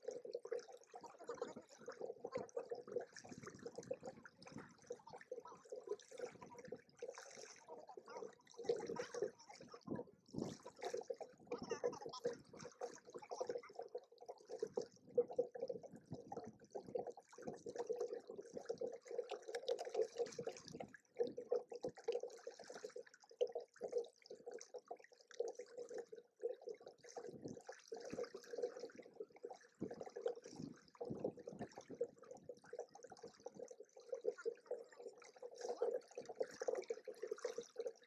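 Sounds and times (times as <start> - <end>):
water sloshing and splashing: 1.0 - 13.6.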